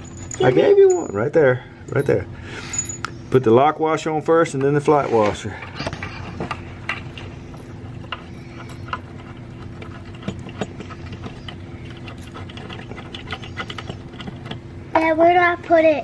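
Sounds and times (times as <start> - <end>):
screws and washers clinking: 0.0 - 1.3, 1.9 - 3.1, 6.0 - 14.7
steady low hum: 0.0 - 16.0.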